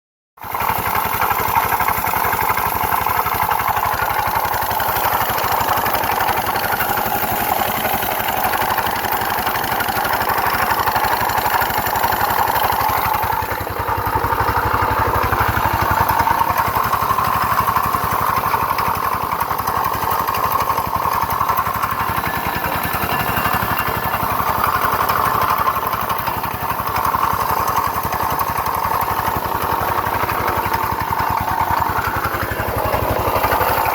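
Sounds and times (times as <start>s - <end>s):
scooter engine running: 0.4s - 33.9s.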